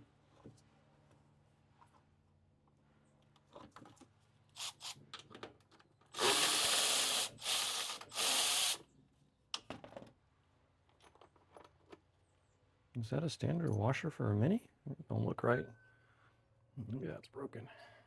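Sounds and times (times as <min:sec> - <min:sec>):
ratchet wrench ratcheting: 0:04.6 - 0:05.0, 0:06.1 - 0:08.8.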